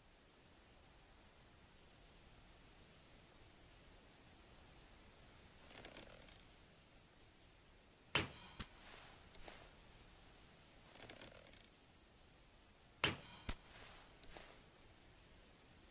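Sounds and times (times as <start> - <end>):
faint arrow knock: 8.2 - 9.8, 13.0 - 14.6
bowstring snap: 13.0 - 14.6.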